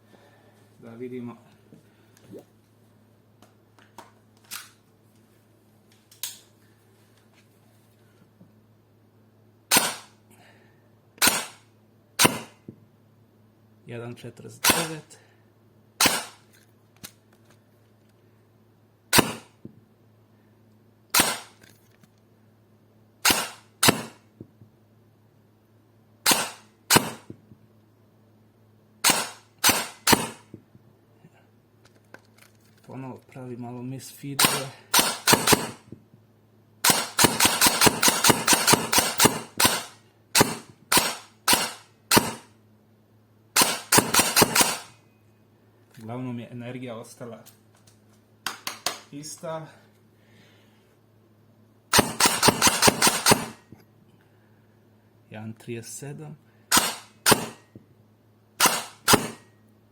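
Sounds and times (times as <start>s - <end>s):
airsoft gun single shots: 9.7s - 10.2s, 11.2s - 11.6s, 12.2s - 12.6s, 14.6s - 15.0s, 16.0s - 16.4s, 19.1s - 19.6s, 21.1s - 21.6s, 23.2s - 24.2s, 26.2s - 27.4s, 29.0s - 30.5s, 34.4s - 35.9s, 36.8s - 42.5s, 43.6s - 45.0s, 51.9s - 53.7s, 56.7s - 57.7s, 58.6s - 59.5s.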